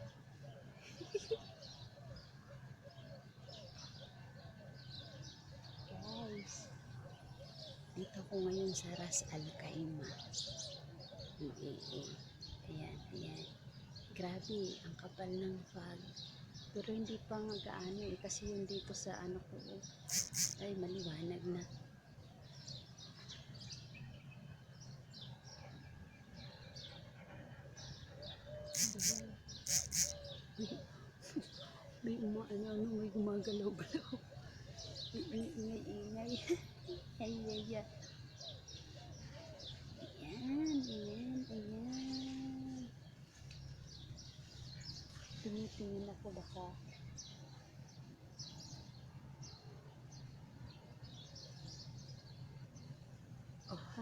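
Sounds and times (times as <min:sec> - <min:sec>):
small birds chirping: 0:00.0 - 0:54.0
sharp bird call: 0:20.1 - 0:20.6, 0:28.6 - 0:30.4.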